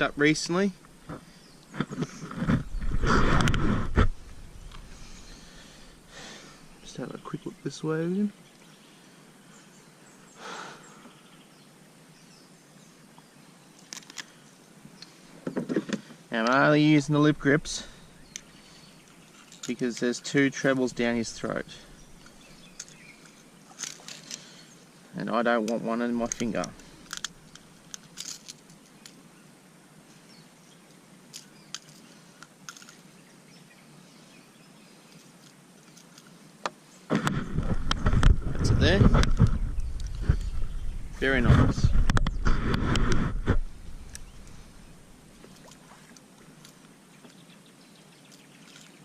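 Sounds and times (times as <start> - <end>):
faint background noise: 0.0 - 49.0
small clicks and knocks: 25.6 - 29.2.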